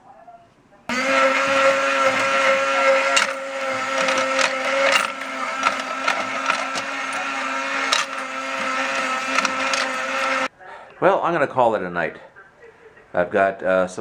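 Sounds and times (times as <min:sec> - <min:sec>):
motor hum: 0:00.9 - 0:10.5
sharp clicks and knocks: 0:01.4 - 0:10.5.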